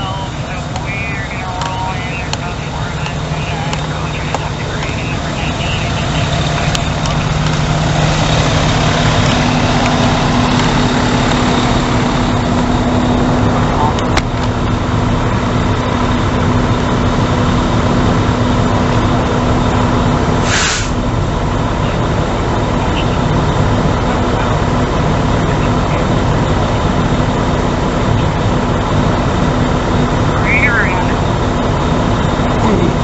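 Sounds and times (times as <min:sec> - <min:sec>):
truck engine idling: 0:00.0 - 0:33.0
air hiss: 0:20.4 - 0:21.0.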